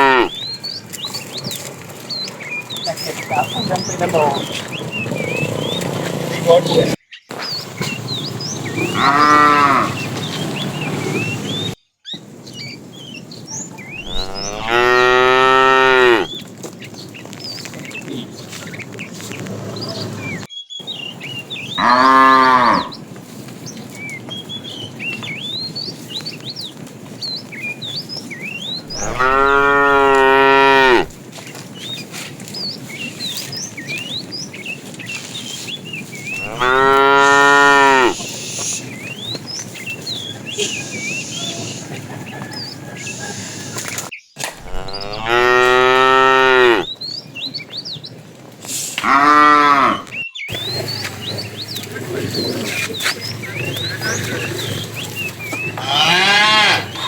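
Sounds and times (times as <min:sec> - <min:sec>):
cow mooing: 0:00.0 - 0:00.4, 0:08.9 - 0:10.1, 0:14.0 - 0:16.3, 0:21.8 - 0:22.9, 0:28.9 - 0:31.1, 0:36.4 - 0:38.2, 0:44.6 - 0:46.9, 0:49.0 - 0:50.1, 0:55.8 - 0:57.0.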